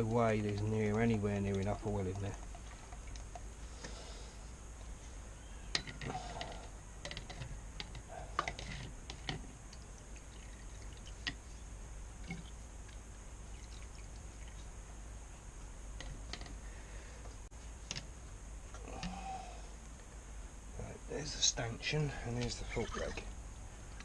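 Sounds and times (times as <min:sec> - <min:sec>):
light clicks and taps: 0:00.0 - 0:04.0
steady low hum: 0:00.0 - 0:24.0.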